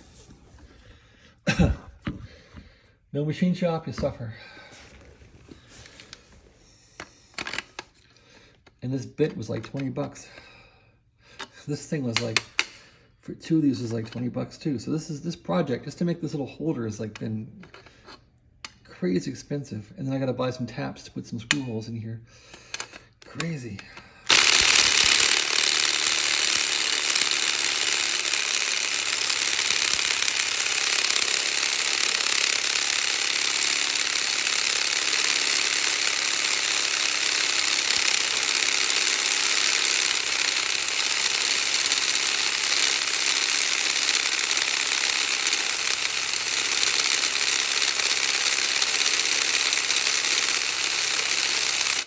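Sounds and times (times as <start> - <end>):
cordless drill grinding: 0.0 - 1.0, 1.9 - 2.9, 4.7 - 8.8, 17.1 - 18.8, 22.4 - 52.0.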